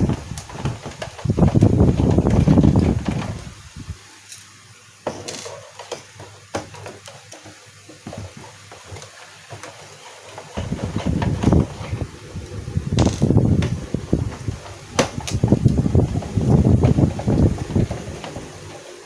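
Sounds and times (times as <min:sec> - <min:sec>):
handling noise rumble: 0:00.0 - 0:04.0, 0:10.3 - 0:19.0.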